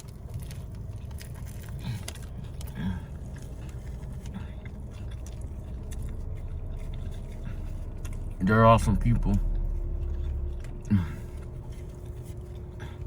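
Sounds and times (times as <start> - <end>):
low rumble: 0.0 - 13.0
person chewing food: 0.0 - 13.0.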